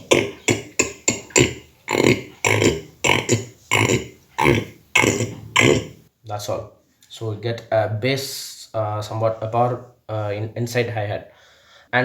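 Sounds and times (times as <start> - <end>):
beatboxing bassy hi-hat sound: 0.0 - 5.9.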